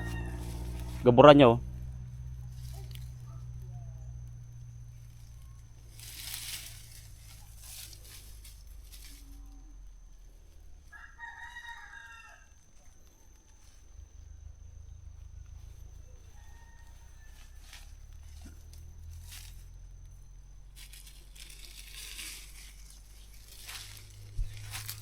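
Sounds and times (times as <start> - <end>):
rooster crowing: 0.0 - 2.5, 10.8 - 12.9, 16.0 - 18.6
low rumble: 0.0 - 10.8, 17.8 - 25.0
rustling noise: 5.0 - 9.6, 20.7 - 25.0.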